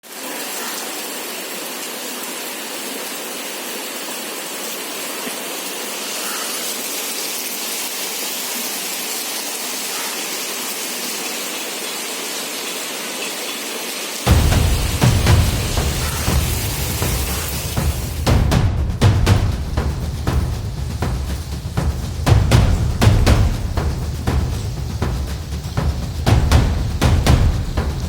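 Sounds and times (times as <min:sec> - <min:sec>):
heavy rain pouring: 0:00.0 - 0:28.0
loud music with deep bass: 0:14.3 - 0:28.0.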